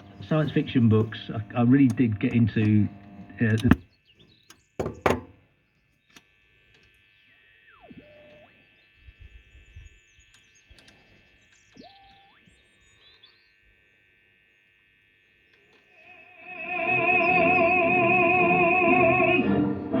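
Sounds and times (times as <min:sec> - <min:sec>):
radio hiss: 0:00.0 - 0:03.8
radio tuning whistles: 0:00.0 - 0:03.8, 0:16.0 - 0:19.5.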